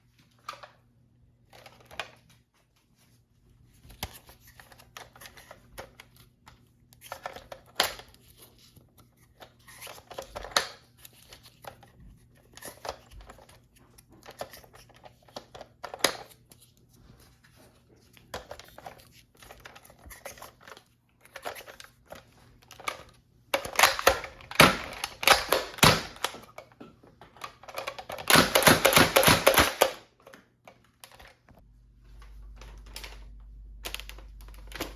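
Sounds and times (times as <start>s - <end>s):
rustling handling noises: 0.0s - 25.4s.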